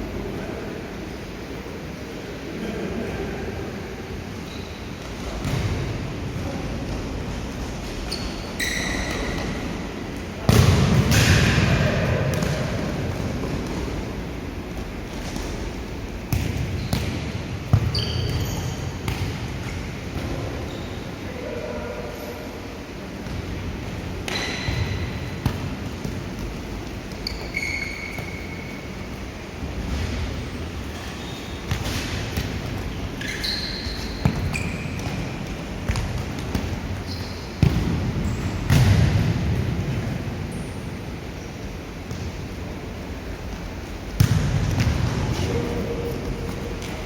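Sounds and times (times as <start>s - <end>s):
sneakers squeaking on floor: 4.4s - 5.7s, 7.7s - 9.8s, 16.3s - 21.2s, 24.2s - 29.3s, 30.0s - 38.8s
shoe squeaks on court: 8.0s - 9.5s, 17.9s - 18.9s, 27.2s - 28.8s, 33.2s - 35.1s, 37.0s - 37.6s
ball kicked and bouncing: 44.2s - 45.4s.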